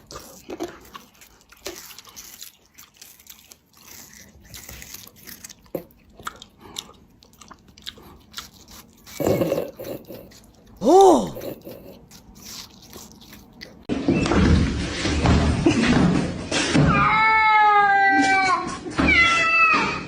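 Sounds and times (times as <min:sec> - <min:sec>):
cat crunching and chewing food: 0:00.0 - 0:13.9.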